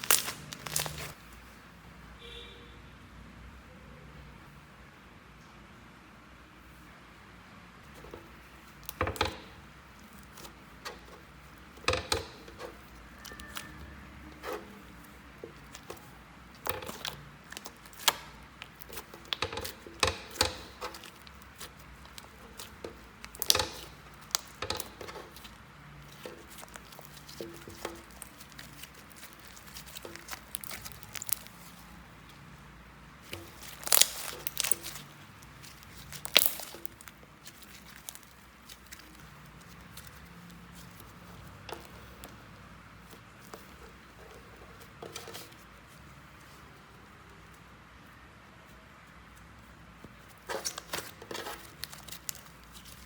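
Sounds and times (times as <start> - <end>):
slime sticky clicks and pops: 36.1 - 37.1.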